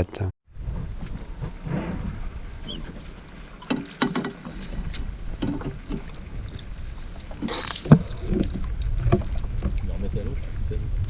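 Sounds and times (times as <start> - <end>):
low steady rumble: 0.1 - 11.0
wind buffeting microphone: 0.5 - 11.0
knocks against boat: 3.6 - 4.7.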